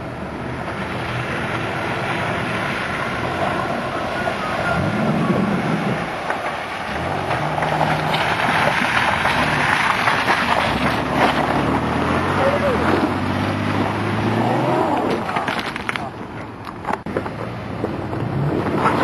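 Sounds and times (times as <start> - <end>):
truck engine revving: 0.0 - 16.0
crackling noise: 2.4 - 12.2.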